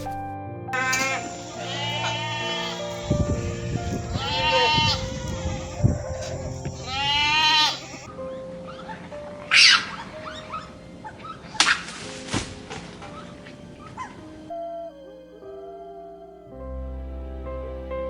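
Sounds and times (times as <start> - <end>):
soft piano music: 0.0 - 18.0
animal crying out: 0.8 - 8.1.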